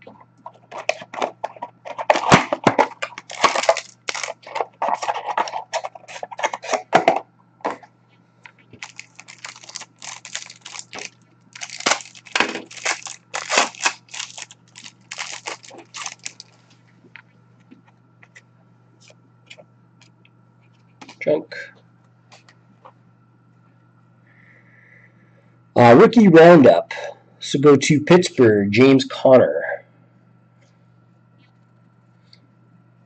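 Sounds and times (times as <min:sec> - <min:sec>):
wrappers tearing and crumpling: 0:02.0 - 0:06.8, 0:08.8 - 0:16.6.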